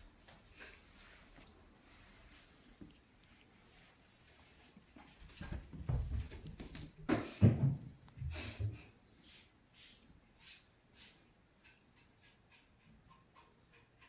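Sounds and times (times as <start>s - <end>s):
cats thumping in a box: 5.2s - 8.0s.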